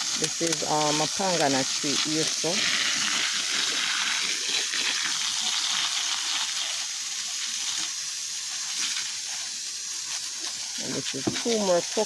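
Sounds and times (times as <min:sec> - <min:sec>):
garden hose spraying water: 0:00.0 - 0:12.0.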